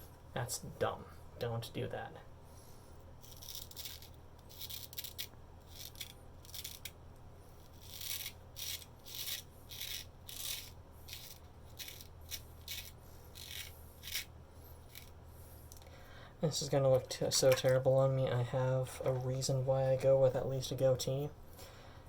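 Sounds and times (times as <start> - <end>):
razor scraping stubble: 3.2 - 15.2.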